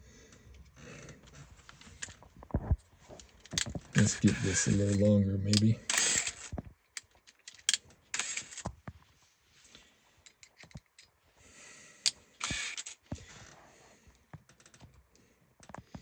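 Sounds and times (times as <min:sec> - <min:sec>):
small clicks of parts: 0:03.2 - 0:08.7, 0:09.7 - 0:11.2, 0:12.0 - 0:16.0.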